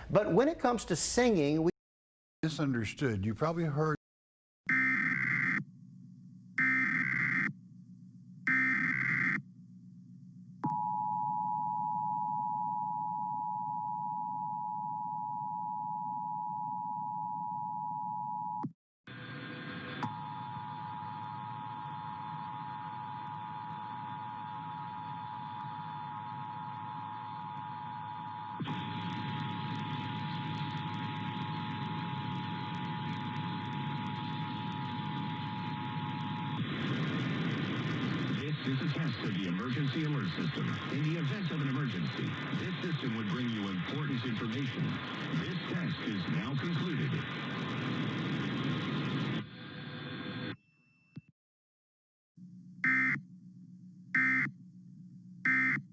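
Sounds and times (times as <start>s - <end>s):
two-tone alert alarm: 52.8s - 53.2s, 54.2s - 54.5s, 55.5s - 55.8s.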